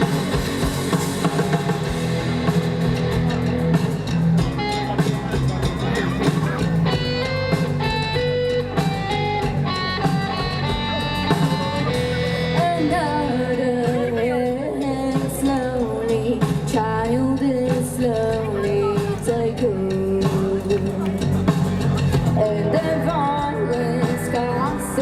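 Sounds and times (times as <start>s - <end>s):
guitar melody: 0.0s - 15.8s
live rock band playing: 0.0s - 25.0s
steady bass: 0.0s - 25.0s.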